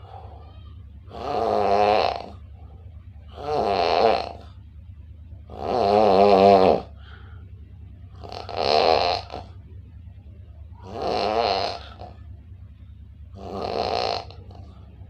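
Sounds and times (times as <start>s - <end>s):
steady low hum: 0.0s - 15.0s
person snoring: 1.1s - 2.4s, 3.3s - 4.4s, 5.5s - 6.9s, 8.2s - 9.5s, 10.8s - 12.1s, 13.4s - 14.6s.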